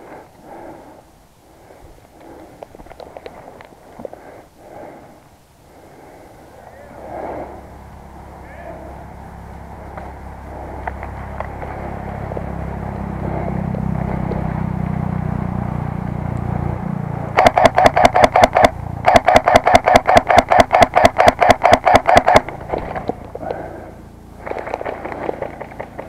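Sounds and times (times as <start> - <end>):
low steady hum: 0.0 - 26.0
airsoft rifle full-auto shots: 17.4 - 22.6.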